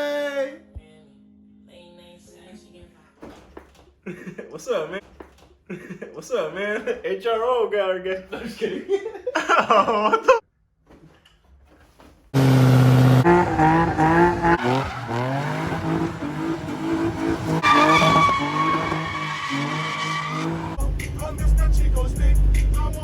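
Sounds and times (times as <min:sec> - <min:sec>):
tire squeal: 0:12.4 - 0:20.8
car engine revving hard: 0:12.4 - 0:21.3
deep bass beat: 0:20.8 - 0:23.0.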